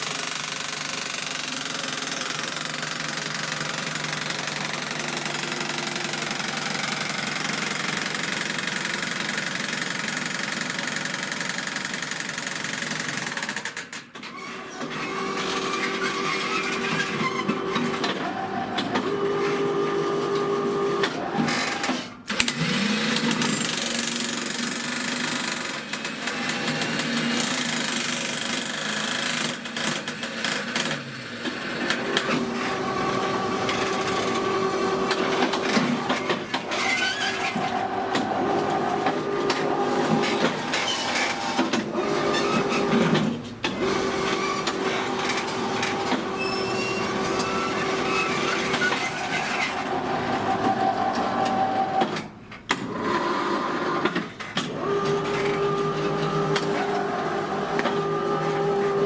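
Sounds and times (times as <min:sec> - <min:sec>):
jackhammer hammering: 0:00.0 - 0:13.9.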